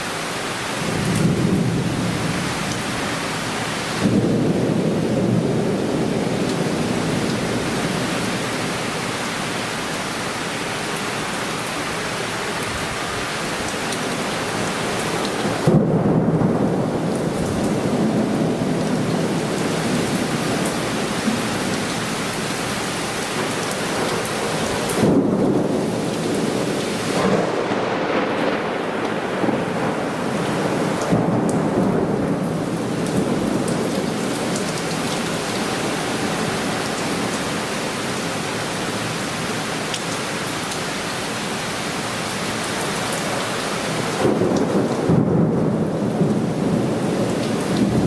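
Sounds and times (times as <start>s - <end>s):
heavy rain hissing: 0.0s - 48.0s
thunder rumbling: 0.8s - 9.2s, 14.0s - 38.6s, 43.4s - 48.0s.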